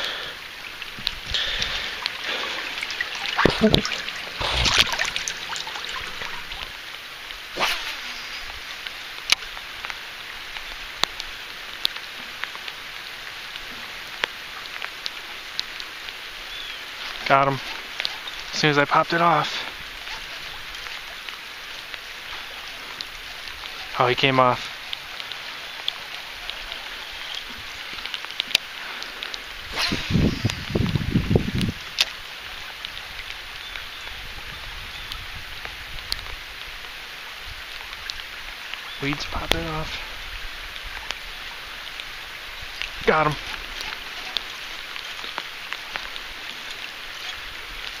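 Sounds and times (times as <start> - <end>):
raindrops ticking close by: 0.0 - 7.6, 8.2 - 48.0
rain hissing: 0.0 - 48.0
wind buffeting on microphone: 29.6 - 31.9.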